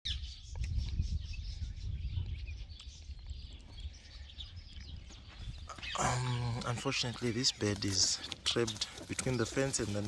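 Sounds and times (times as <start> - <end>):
wind rumble on microphone: 0.1 - 5.8
small birds chirping: 0.1 - 10.0.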